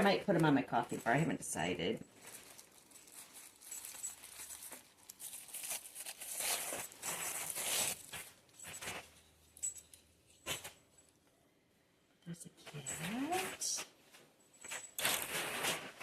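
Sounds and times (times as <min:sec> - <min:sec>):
packing material crumpled and torn: 0:02.1 - 0:08.4, 0:15.0 - 0:16.0.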